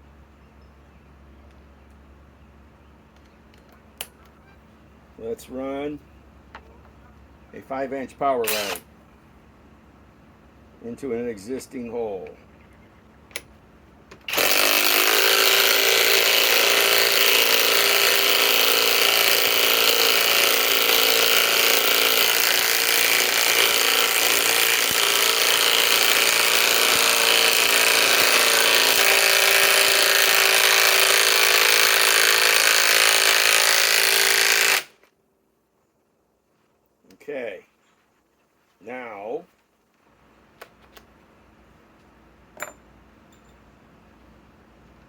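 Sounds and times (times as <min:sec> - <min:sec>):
impact wrench hammering: 0:14.3 - 0:34.9, 0:42.6 - 0:42.8.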